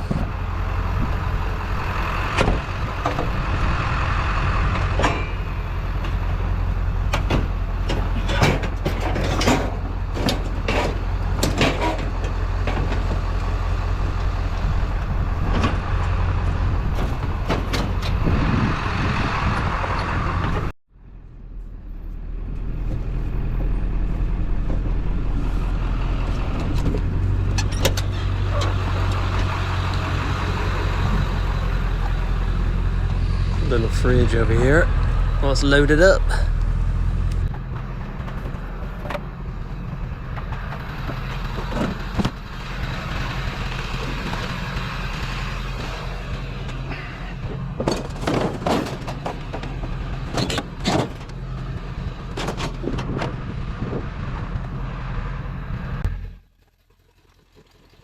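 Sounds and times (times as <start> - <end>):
vehicle engine hum: 0.0 - 58.0
sharp knocks and rattles: 4.7 - 6.4, 7.0 - 13.6, 47.5 - 53.5.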